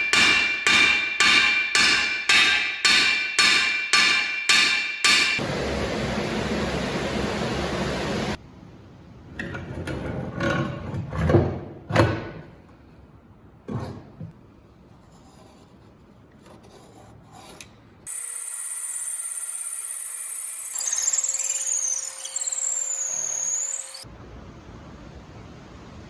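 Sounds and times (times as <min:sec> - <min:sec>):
high whine: 0:18.1 - 0:24.0.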